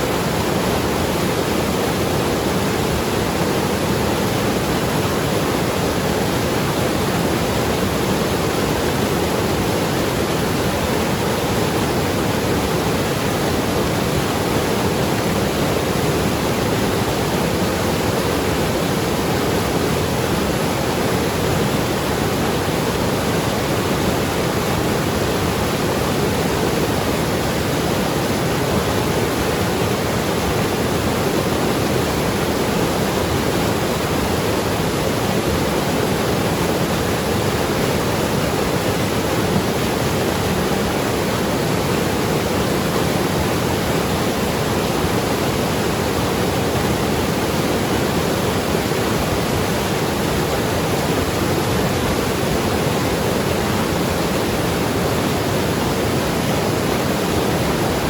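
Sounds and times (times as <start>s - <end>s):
river rushing over rocks: 0.0s - 58.0s.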